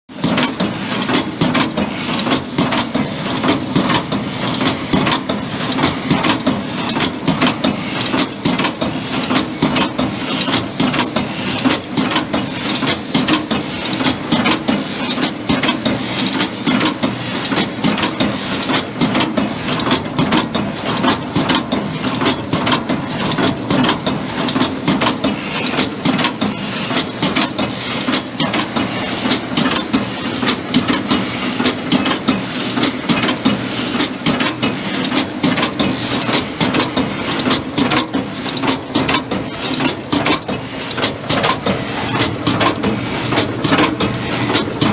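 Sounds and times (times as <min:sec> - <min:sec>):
mechanical hum: 0:00.1 - 0:44.9
machine clattering clicks: 0:00.2 - 0:44.9.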